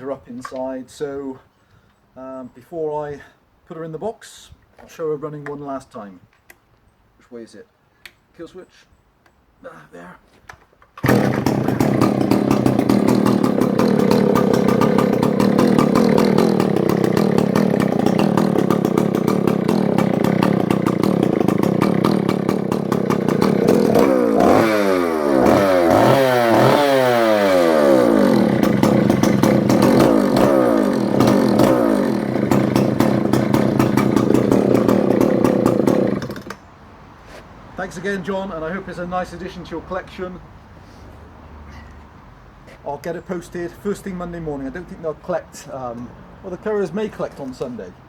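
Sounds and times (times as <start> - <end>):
chainsaw engine revving: 11.0 - 36.7.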